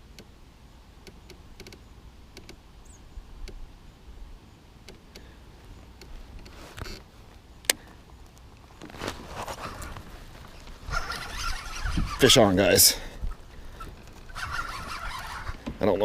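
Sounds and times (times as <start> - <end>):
short rustle: 5.5 - 16.0
fishing gear clicks: 13.3 - 15.7.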